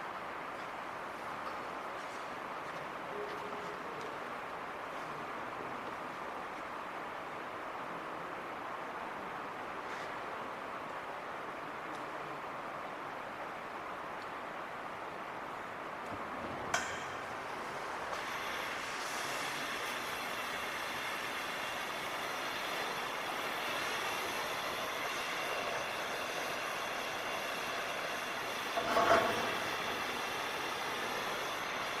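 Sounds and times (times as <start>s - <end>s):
welding arc hissing: 16.7s - 32.0s.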